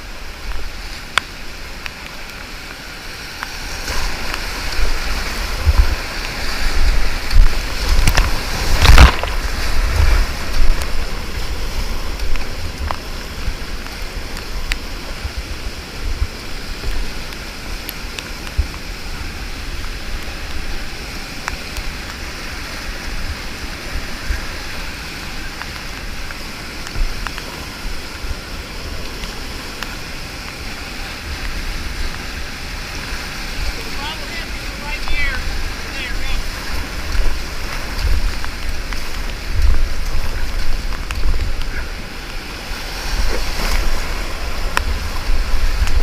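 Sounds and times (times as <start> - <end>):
whitewater rapids roaring: 0.0 - 46.0
wind buffeting microphone: 4.1 - 17.8, 22.2 - 46.0.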